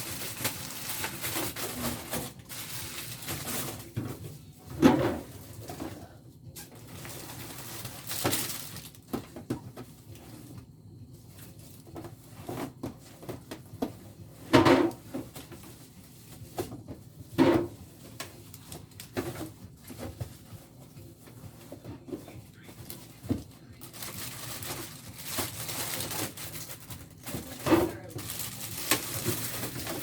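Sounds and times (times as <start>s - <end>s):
packaging rustling: 0.0s - 4.0s, 6.8s - 9.2s, 22.5s - 30.0s
frozen packages knocking and bumping: 0.0s - 10.6s, 11.4s - 30.0s.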